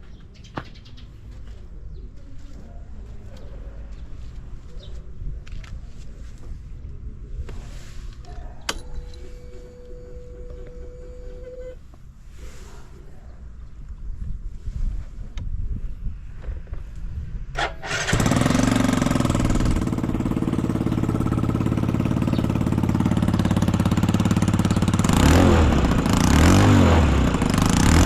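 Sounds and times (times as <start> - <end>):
scooter engine idling and revving: 17.6 - 28.0.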